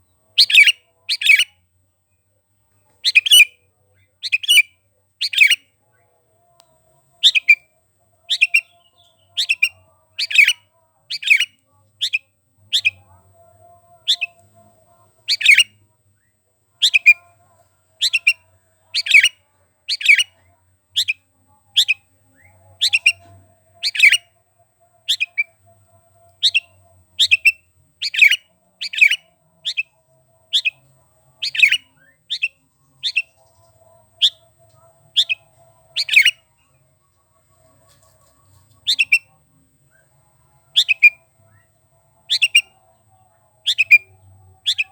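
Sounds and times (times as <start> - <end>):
bulbul chirping: 0.4 - 1.5, 3.0 - 3.5, 4.2 - 5.6, 7.2 - 7.6, 8.3 - 8.8, 9.4 - 13.0, 14.1 - 14.4, 15.3 - 15.7, 16.8 - 17.2, 18.0 - 18.4, 19.0 - 19.3, 19.9 - 20.3, 22.8 - 23.2, 23.8 - 24.2, 25.1 - 25.5, 26.4 - 29.9, 30.6 - 30.8, 31.4 - 33.4, 35.2 - 35.4, 36.0 - 36.4, 38.9 - 39.3, 40.8 - 41.2, 42.3 - 42.8, 43.7 - 44.9.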